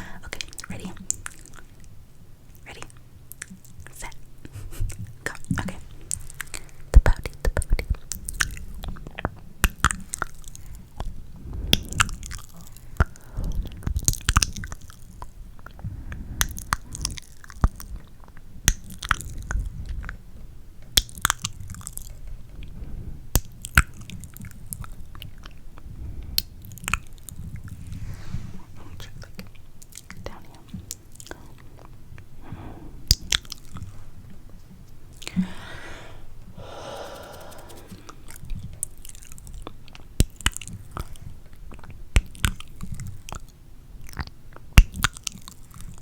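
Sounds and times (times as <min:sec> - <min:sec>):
wet mouth clicks and lip smacks: 0:36.6 - 0:38.2.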